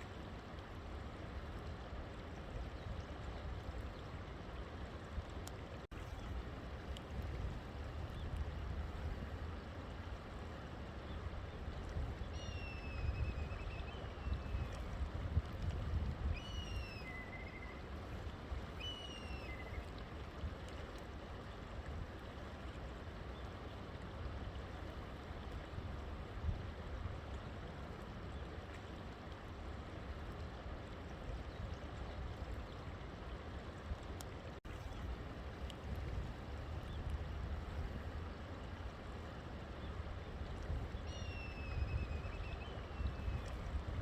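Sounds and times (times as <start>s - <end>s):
river water flowing: 0.0s - 44.0s.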